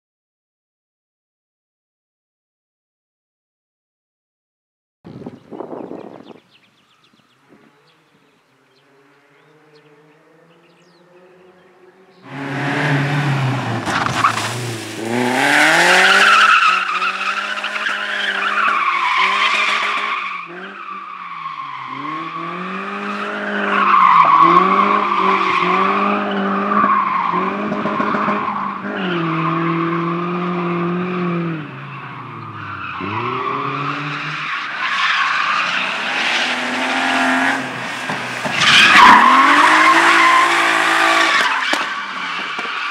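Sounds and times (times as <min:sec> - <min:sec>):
race car engine revving: 0:08.8 - 0:34.5.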